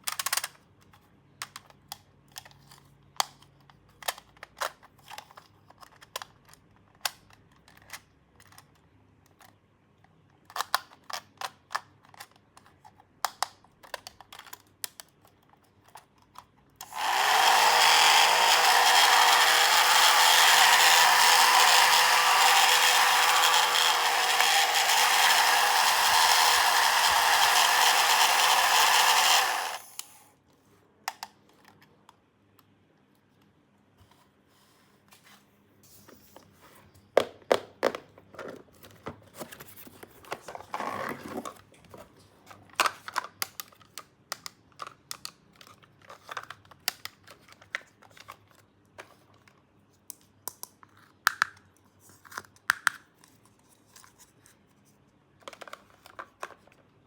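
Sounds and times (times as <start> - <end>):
plastic toy pieces clicking: 0.0 - 0.6, 15.9 - 30.1.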